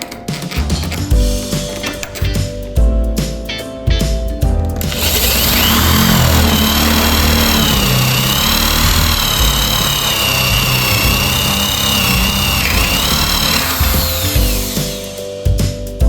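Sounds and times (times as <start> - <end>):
electric power tool whining: 4.8 - 15.2.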